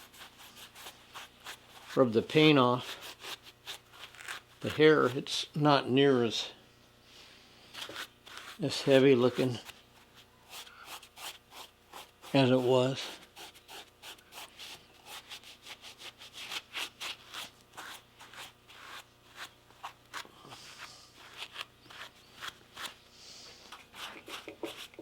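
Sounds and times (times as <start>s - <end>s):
rubbing strokes over hair: 7.7s - 25.0s.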